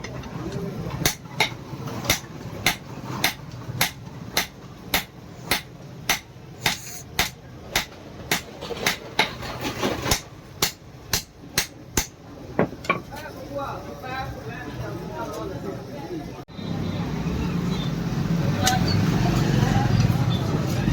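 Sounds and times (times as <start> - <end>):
hammer striking iron on anvil: 1.0 - 9.3, 10.1 - 13.0.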